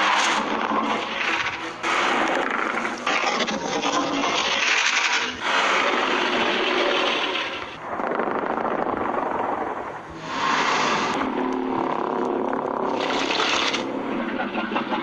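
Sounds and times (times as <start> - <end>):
low drone: 0.0 - 15.0
monster roars: 5.4 - 9.2, 10.1 - 14.3.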